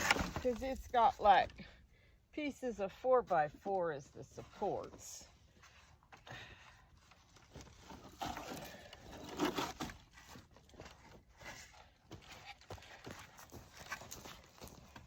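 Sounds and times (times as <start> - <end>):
wooden pallet scraping and knocking: 0.0 - 1.4.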